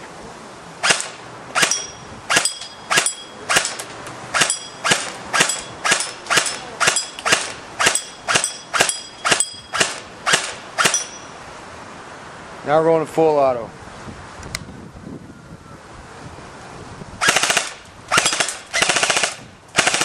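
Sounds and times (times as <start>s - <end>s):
airsoft rifle single shots: 0.8s - 3.8s, 4.4s - 11.0s.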